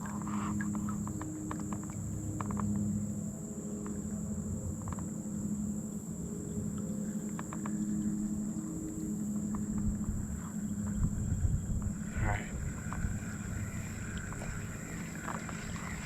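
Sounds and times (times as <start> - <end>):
insects chorus: 0.0 - 16.0
small clicks and taps: 7.3 - 7.8.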